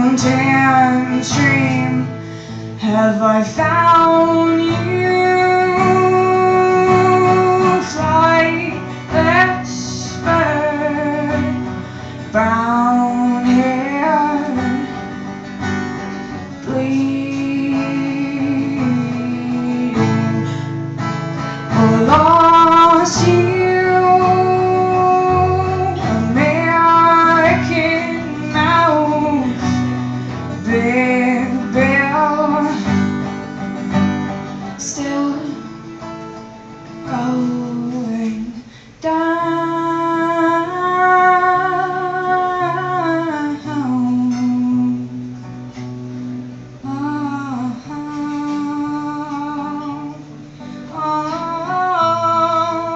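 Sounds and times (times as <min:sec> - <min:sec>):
woman singing with vibrato: 0:00.0 - 0:45.8, 0:46.8 - 0:52.9
acoustic guitar: 0:00.0 - 0:52.9.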